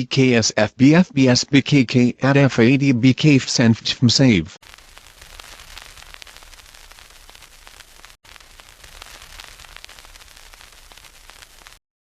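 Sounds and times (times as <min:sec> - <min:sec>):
radio static crackling: 0:04.6 - 0:11.8.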